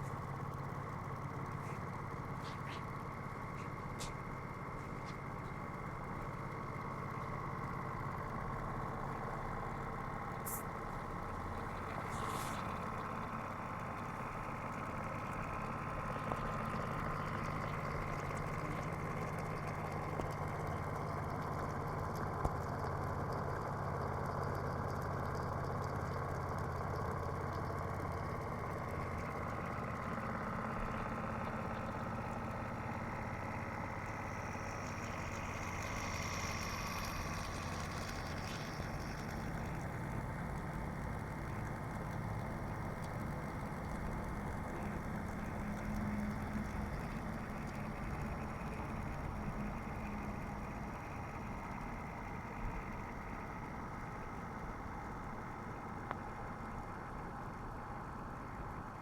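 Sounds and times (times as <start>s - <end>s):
motor-generator humming and whining: 0.0s - 59.0s
faint ticks: 34.8s - 53.6s, 56.0s - 56.3s.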